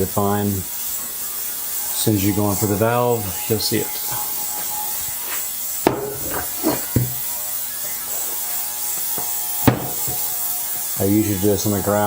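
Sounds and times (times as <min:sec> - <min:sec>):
tyre rubbing and handling: 0:04.1 - 0:07.3, 0:08.1 - 0:10.3.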